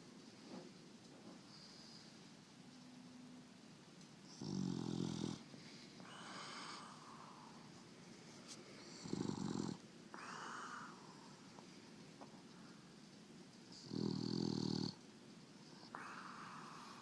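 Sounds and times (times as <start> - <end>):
dog snoring: 4.3 - 7.7, 8.8 - 11.2, 13.7 - 15.0.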